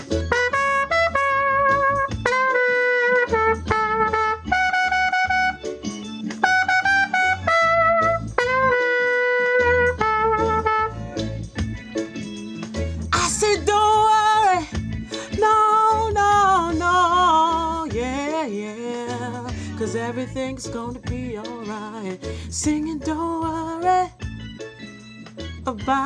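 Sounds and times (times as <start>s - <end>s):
trumpet solo: 0.0s - 11.4s
reggae backing track: 0.0s - 26.0s.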